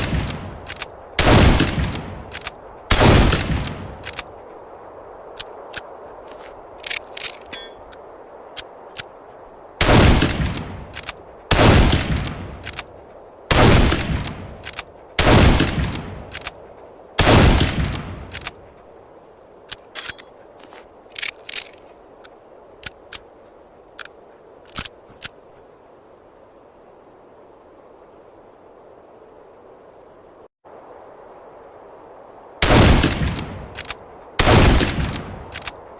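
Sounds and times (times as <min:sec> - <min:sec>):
rifle shots echoing: 0:11.5 - 0:12.4, 0:13.5 - 0:14.4, 0:17.2 - 0:18.4, 0:34.4 - 0:35.4.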